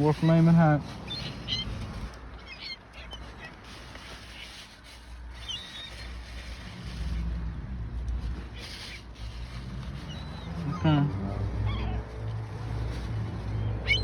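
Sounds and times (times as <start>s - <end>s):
seagulls squealing: 0.0s - 4.6s, 10.0s - 12.1s, 13.5s - 14.0s.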